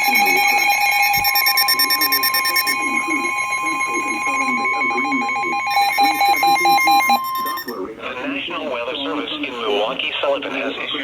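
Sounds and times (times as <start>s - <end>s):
loud steady alarm tone: 0.0s - 7.8s.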